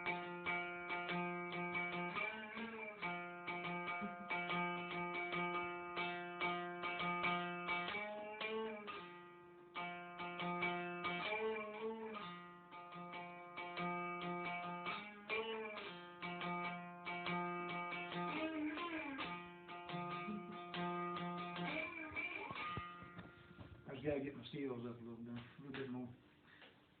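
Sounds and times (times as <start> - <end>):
plucked one-string diddley bow: 9.8 - 23.4.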